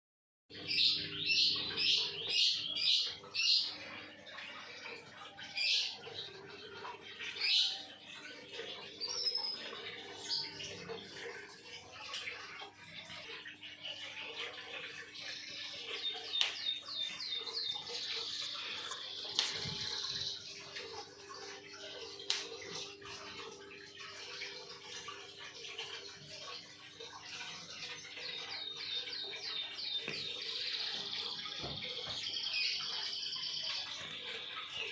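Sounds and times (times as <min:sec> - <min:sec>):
bird singing with trill: 0:15.6 - 0:20.4, 0:28.0 - 0:34.9.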